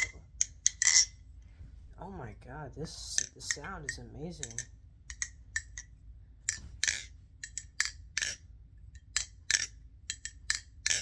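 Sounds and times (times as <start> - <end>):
butterfly knife metallic clicks: 3.2 - 5.9, 6.5 - 8.4, 9.0 - 11.0.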